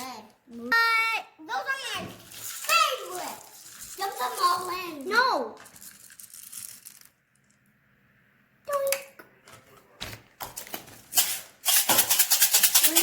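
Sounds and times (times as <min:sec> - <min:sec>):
crayons clattering into plastic tub: 0:02.0 - 0:07.1.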